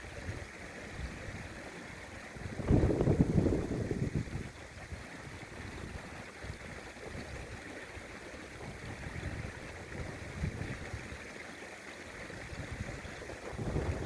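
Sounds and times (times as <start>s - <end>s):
wind buffeting microphone: 2.4s - 4.6s, 8.6s - 11.1s, 12.4s - 14.0s.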